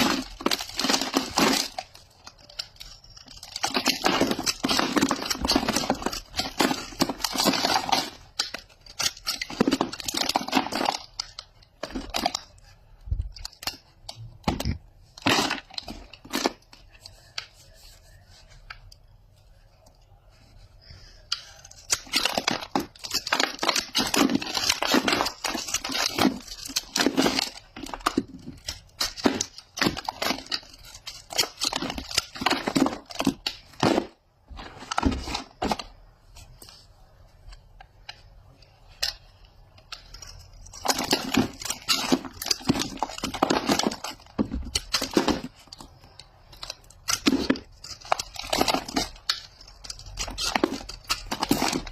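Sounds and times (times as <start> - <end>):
wrapper crinkling and tearing: 0.0 - 12.6, 21.3 - 36.8, 38.9 - 51.9.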